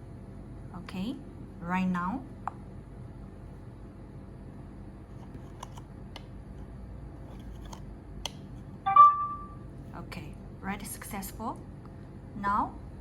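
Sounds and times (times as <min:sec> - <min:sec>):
short electronic beep: 0:08.9 - 0:09.7.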